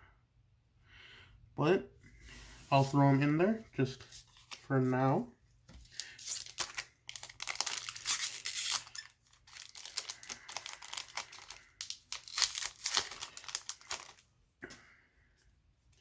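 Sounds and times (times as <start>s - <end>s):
foil wrapper tearing and crinkling: 5.9s - 14.3s.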